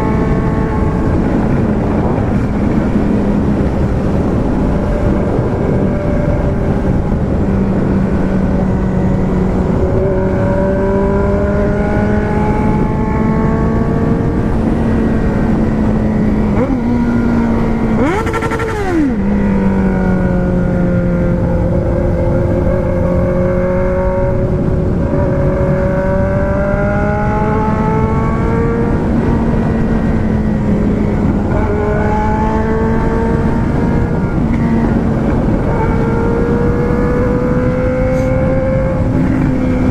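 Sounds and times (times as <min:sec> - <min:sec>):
wind and road noise: 0:00.0 - 0:39.9.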